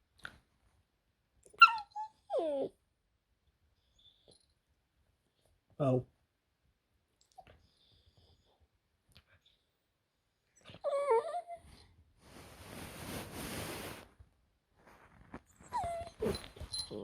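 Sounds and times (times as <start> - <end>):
dog whimpering: 1.6 - 2.7, 10.7 - 11.6, 15.6 - 17.0.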